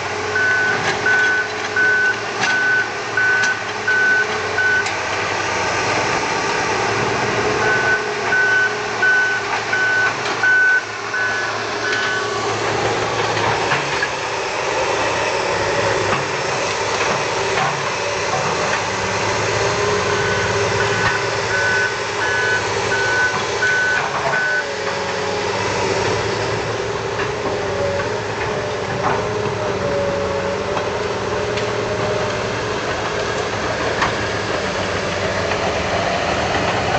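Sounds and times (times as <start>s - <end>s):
heavy vehicle engine running: 0.0s - 36.9s
vehicle reversing alarm beeping: 0.3s - 5.0s, 7.6s - 14.0s, 19.5s - 24.9s.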